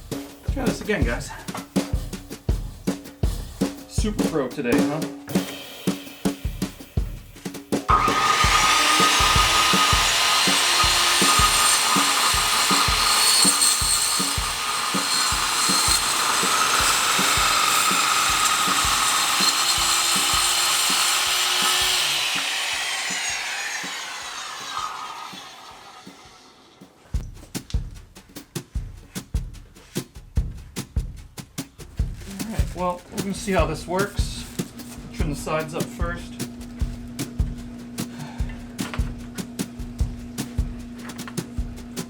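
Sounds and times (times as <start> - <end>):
background music with beat: 0.0 - 10.3, 27.0 - 42.0
circular saw cutting wood: 7.9 - 27.0
saw blade spinning down: 7.9 - 27.0.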